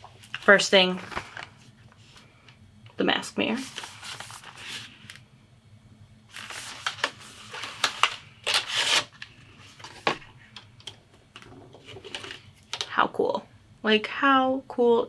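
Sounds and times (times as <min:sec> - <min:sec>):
packaging rustling and crinkling: 0:00.0 - 0:02.3, 0:03.6 - 0:05.2, 0:06.3 - 0:12.9.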